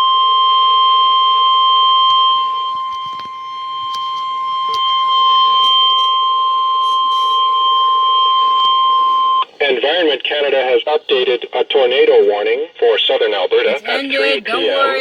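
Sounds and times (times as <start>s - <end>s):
steady high alarm beep: 0.0s - 9.5s.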